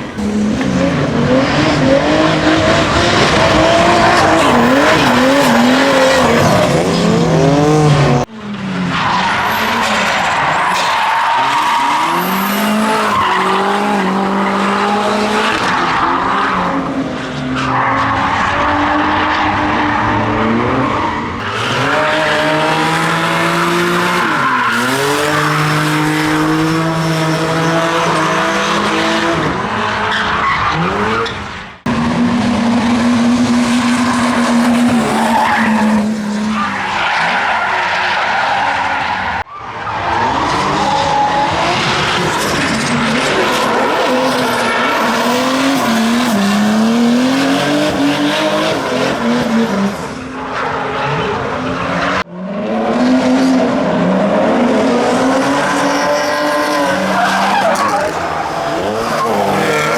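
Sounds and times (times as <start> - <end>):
car engine at high revs: 0.0 - 39.5, 40.2 - 59.9
tyre screech: 8.8 - 14.5, 55.9 - 59.9.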